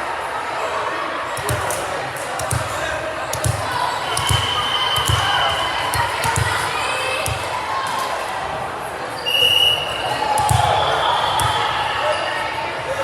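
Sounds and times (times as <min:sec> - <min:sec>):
chatter of spectators: 0:00.0 - 0:13.0
ball bouncing on gym floor: 0:01.3 - 0:08.0, 0:10.3 - 0:12.0.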